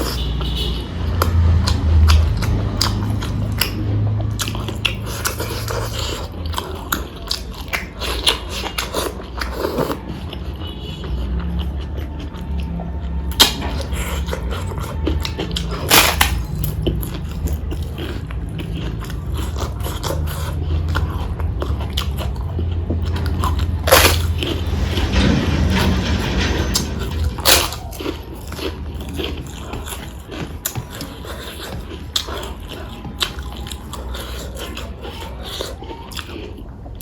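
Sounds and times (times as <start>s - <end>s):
person chewing food: 0.0s - 25.1s, 26.7s - 37.0s
loud crunchy bites: 13.3s - 21.3s.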